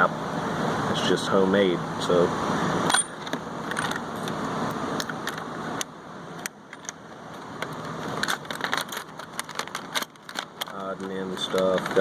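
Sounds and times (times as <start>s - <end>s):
metal tools clinking in a drawer: 2.9s - 4.0s, 7.6s - 12.0s.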